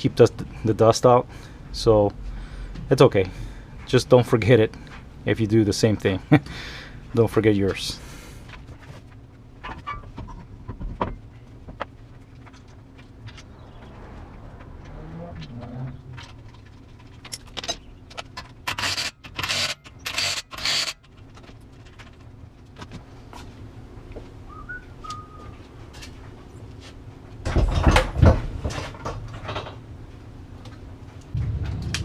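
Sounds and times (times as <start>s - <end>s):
wrench rattling on lug nuts: 17.2s - 21.2s.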